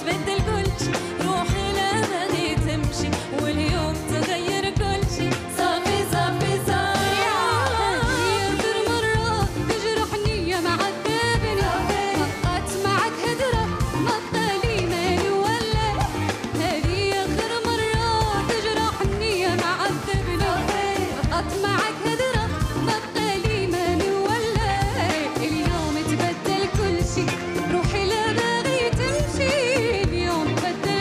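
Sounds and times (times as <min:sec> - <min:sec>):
band accompaniment with steady beat: 0:00.0 - 0:31.0.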